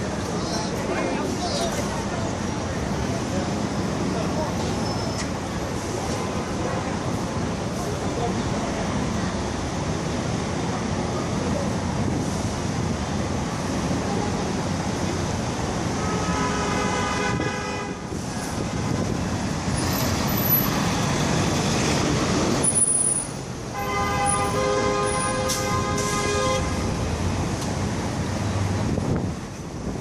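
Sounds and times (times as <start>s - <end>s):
bus engines and traffic: 0.0s - 30.0s
vehicle horn: 16.0s - 18.0s, 23.7s - 26.8s.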